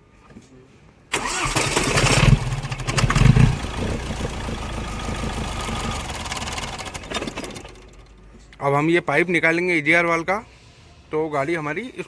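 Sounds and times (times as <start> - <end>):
diesel engine starting and idling: 1.1 - 8.3.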